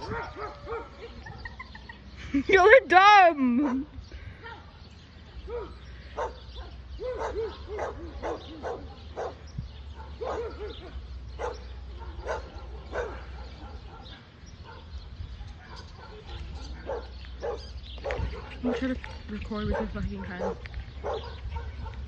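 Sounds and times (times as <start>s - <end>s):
dog barking: 0.0s - 1.4s, 5.5s - 15.0s, 15.6s - 22.0s.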